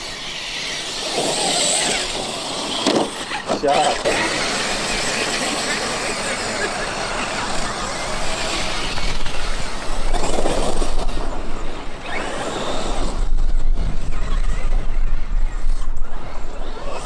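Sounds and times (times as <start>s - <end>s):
tyres on dirt: 0.0s - 13.5s
electric motor whine: 0.0s - 17.0s.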